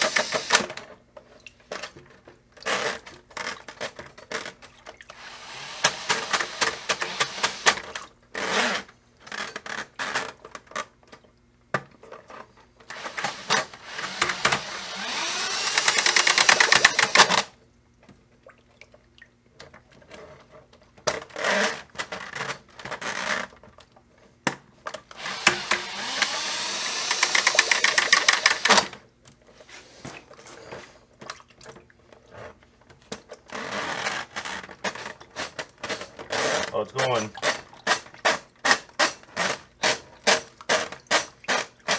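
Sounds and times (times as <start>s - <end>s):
drill spinning drain snake: 0.0s - 0.7s, 5.1s - 9.7s, 12.8s - 17.5s, 25.1s - 29.0s
rattling clicks: 12.9s - 17.4s, 25.1s - 28.9s.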